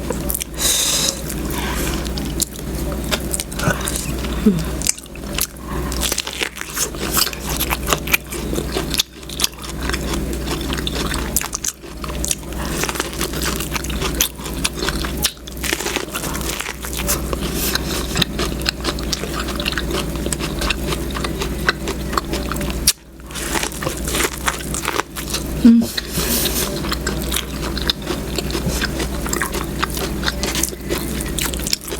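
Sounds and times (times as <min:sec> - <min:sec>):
person biting and chewing food: 0:00.2 - 0:31.9.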